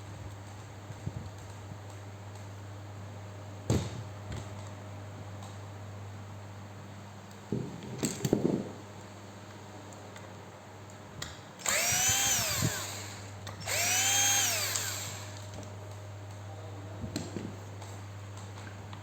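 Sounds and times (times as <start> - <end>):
rotary hammer motor whining: 11.6 - 15.6.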